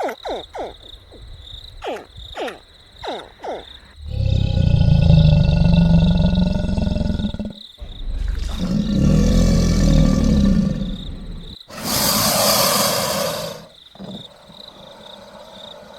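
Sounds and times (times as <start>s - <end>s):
crocodile roaring: 4.0s - 14.3s.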